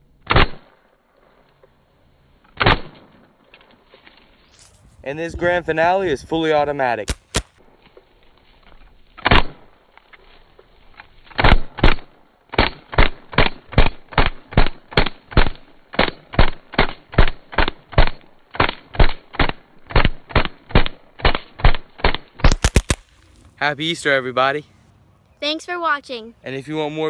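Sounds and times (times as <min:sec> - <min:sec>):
paintball gun shots: 0:00.2 - 0:01.0, 0:02.5 - 0:03.3, 0:07.0 - 0:07.7, 0:09.2 - 0:09.8, 0:11.3 - 0:23.4.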